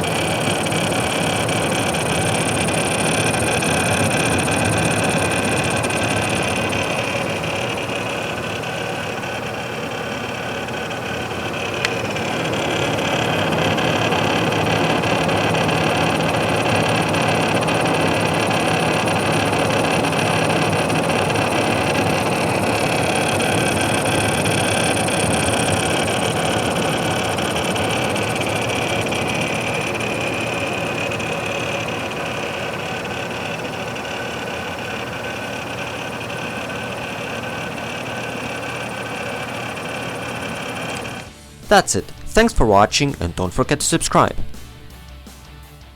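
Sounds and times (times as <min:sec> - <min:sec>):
cooler pump rattling and grinding: 0:00.0 - 0:41.3.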